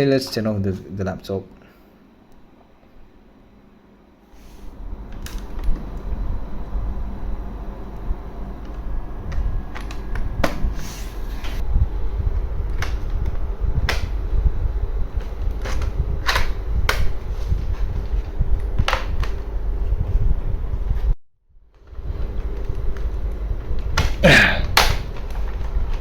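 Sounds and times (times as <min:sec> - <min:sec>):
low handling rumble: 0:04.4 - 0:18.8.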